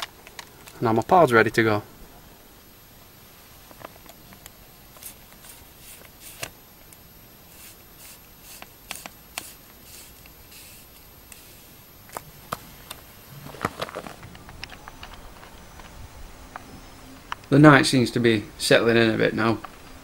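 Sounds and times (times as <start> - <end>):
faint high whine: 0.0 - 20.0.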